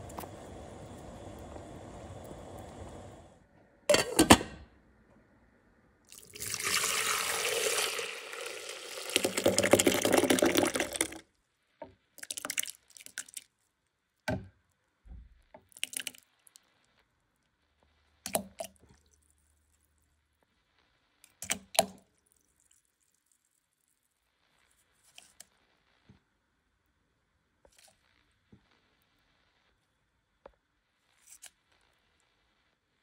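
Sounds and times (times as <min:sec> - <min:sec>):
water running: 0:06.1 - 0:11.2
short clicks and drips: 0:18.3 - 0:19.0.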